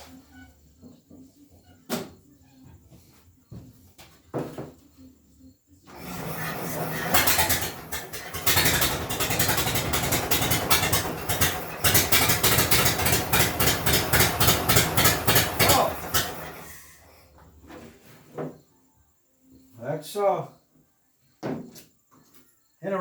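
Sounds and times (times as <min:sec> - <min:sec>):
old engine turning over and popping: 0:05.9 - 0:16.8.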